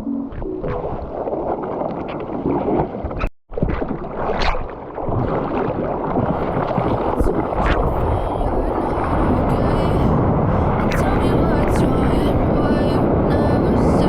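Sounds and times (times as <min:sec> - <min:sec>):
water rushing and splashing: 0:00.0 - 0:14.0
wind buffeting microphone: 0:04.9 - 0:14.0.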